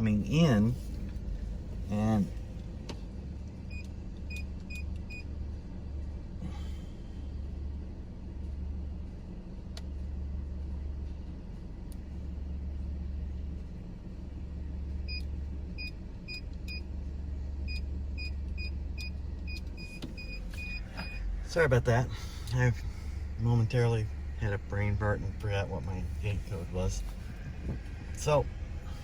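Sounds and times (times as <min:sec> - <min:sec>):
vehicle engine idling: 0:00.0 - 0:29.0.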